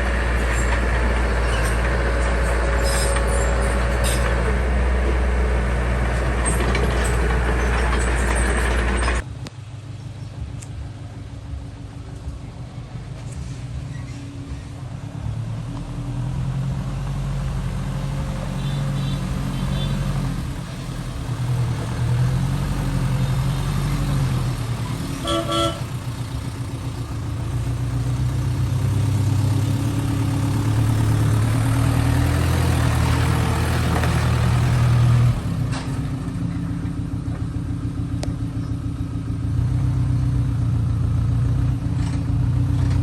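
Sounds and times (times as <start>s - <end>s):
heavy diesel engine running: 0.0s - 43.0s
short vehicle horn toot: 25.2s - 25.9s.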